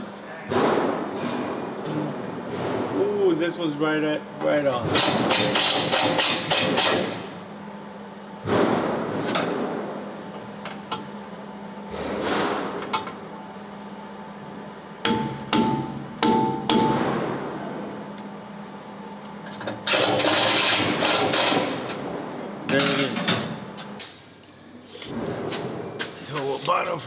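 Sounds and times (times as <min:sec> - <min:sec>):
hammer striking steel: 0:15.0 - 0:17.2.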